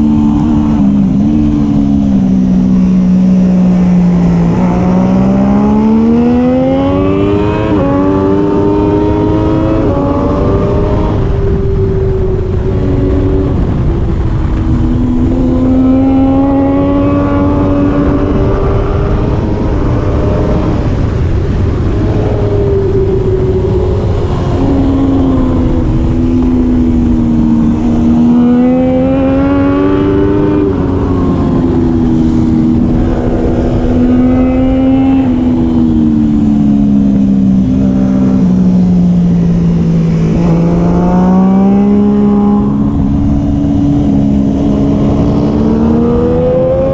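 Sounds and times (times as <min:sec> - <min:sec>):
motorcycle engine racing: 0:00.0 - 0:46.9
steady rushing noise: 0:00.0 - 0:46.9.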